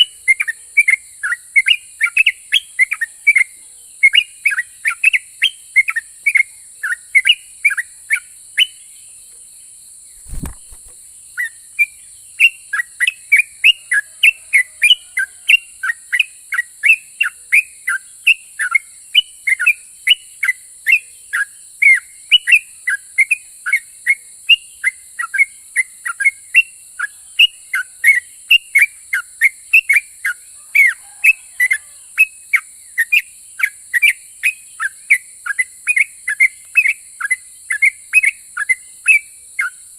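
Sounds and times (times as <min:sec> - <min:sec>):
bird singing whistled notes: 0:00.0 - 0:09.2, 0:10.0 - 0:39.9.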